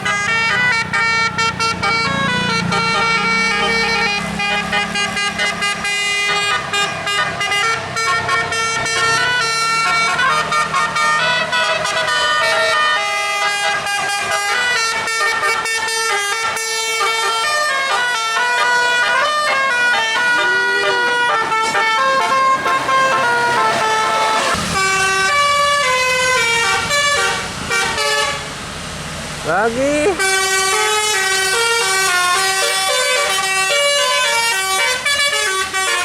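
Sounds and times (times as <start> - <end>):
low engine rumble: 0.0 - 13.8, 19.6 - 35.8
multi-tone bus air horn tune: 0.0 - 28.6, 29.6 - 36.0.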